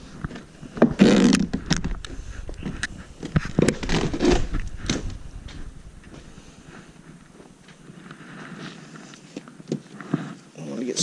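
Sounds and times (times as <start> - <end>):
fabric tearing and scraping: 0.9 - 1.8, 3.4 - 5.0.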